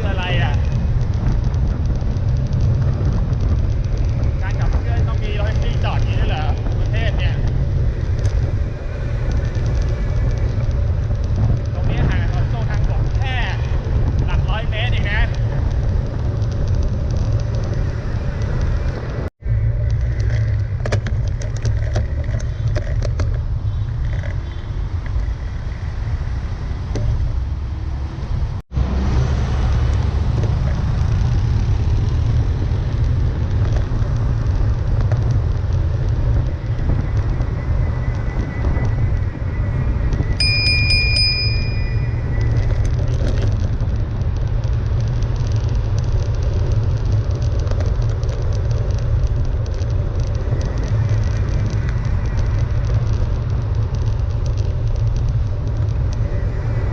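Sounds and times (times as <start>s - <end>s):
traffic rumble: 0.0s - 56.9s
high-pitched crossing beep: 40.4s - 42.3s.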